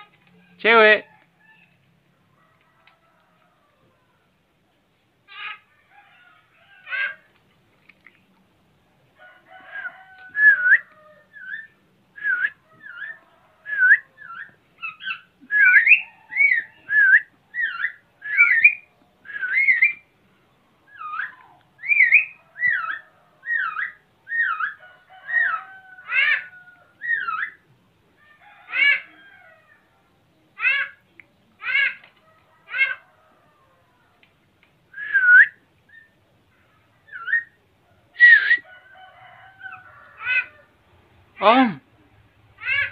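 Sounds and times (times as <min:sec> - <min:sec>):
starling whistling: 0:09.8 - 0:20.0, 0:20.9 - 0:24.8, 0:34.9 - 0:36.1, 0:38.2 - 0:38.7.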